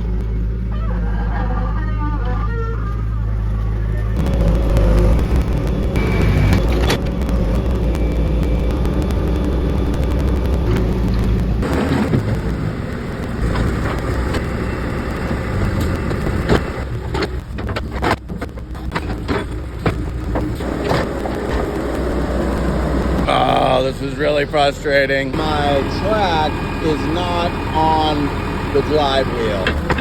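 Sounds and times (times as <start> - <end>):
excavator engine running: 0.0 - 30.0
track knocks and clunks: 3.6 - 30.0.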